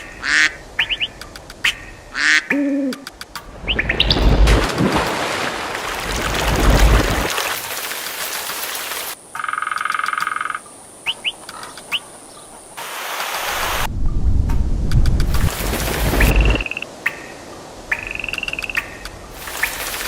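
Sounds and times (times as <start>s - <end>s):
rising bird chirps: 0.0s - 3.0s, 3.6s - 4.4s.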